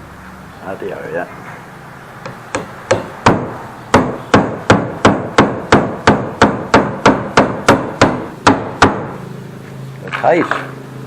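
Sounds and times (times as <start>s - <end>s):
hammer blows on wood: 2.2s - 9.2s.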